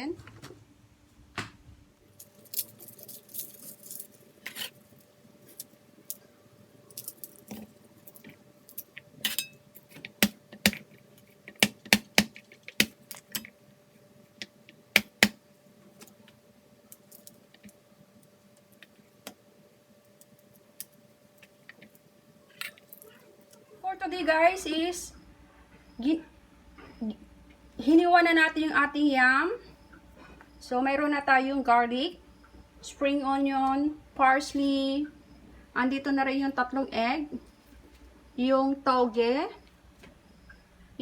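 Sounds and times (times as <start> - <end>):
knife chopping vegetables: 9.3 - 10.9, 11.5 - 13.4, 14.9 - 15.4.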